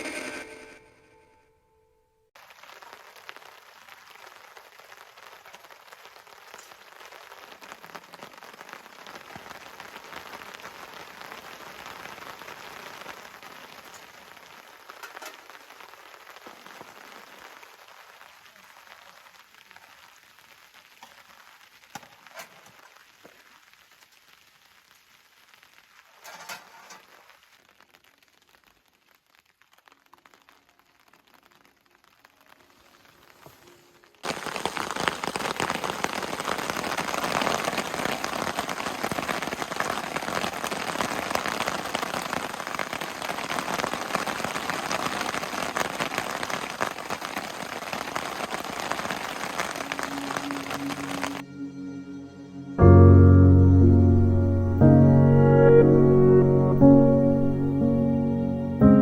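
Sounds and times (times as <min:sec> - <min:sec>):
sharp drop hits: 0:00.0 - 0:01.5
rain pattering: 0:02.3 - 0:51.5.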